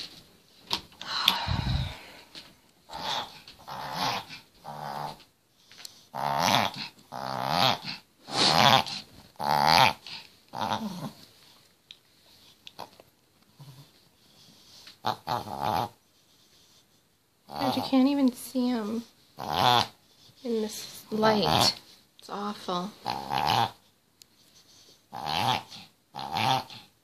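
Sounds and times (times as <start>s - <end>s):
dog reverse sneezing: 8.2s - 9.0s.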